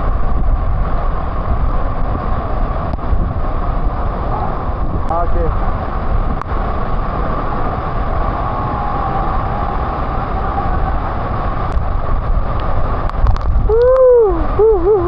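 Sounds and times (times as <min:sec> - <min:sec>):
waterfall and river roar: 0:00.0 - 0:15.0
person whooping: 0:08.4 - 0:10.9, 0:13.7 - 0:15.0.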